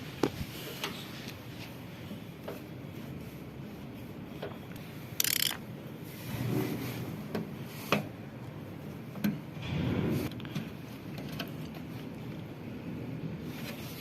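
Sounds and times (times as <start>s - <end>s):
hand tools clicking and scraping: 5.2s - 5.6s.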